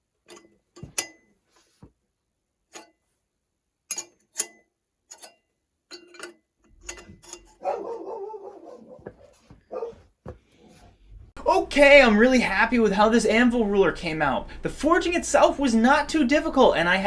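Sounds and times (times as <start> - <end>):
metallic clicks of steel pieces: 0.2 - 1.3, 2.7 - 3.1, 3.9 - 7.6
metal scraping: 3.9 - 9.9.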